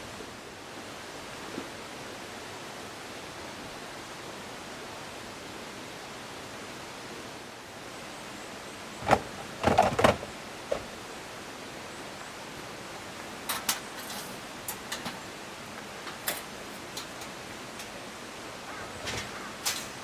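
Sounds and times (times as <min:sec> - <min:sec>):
running river water: 0:00.0 - 0:18.7
sharp knocks and clatters: 0:09.0 - 0:11.0.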